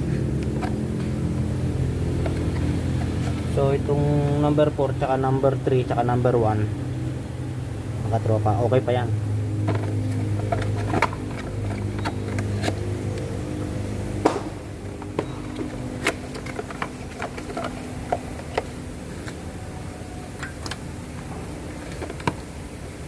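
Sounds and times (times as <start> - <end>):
car engine idling: 0.0 - 23.0
clicks and knocks of parts handled: 9.6 - 13.3, 14.2 - 19.4, 21.8 - 22.5.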